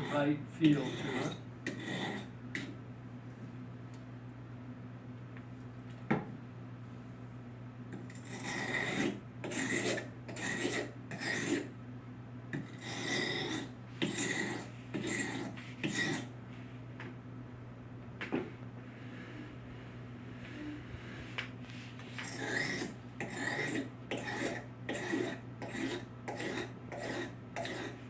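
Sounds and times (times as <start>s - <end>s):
knife scraping on sharpening stone: 0.0s - 2.7s, 8.1s - 11.7s, 12.6s - 16.3s, 22.2s - 28.0s.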